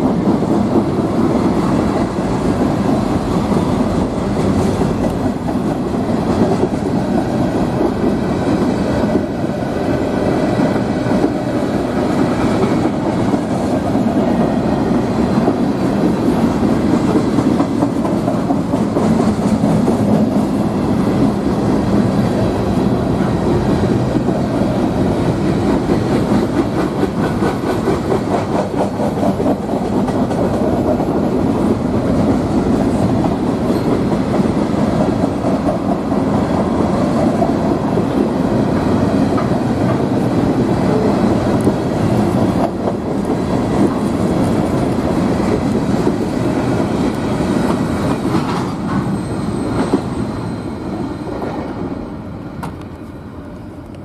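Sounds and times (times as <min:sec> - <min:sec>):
freight train wheels rumbling: 0:00.0 - 0:54.0.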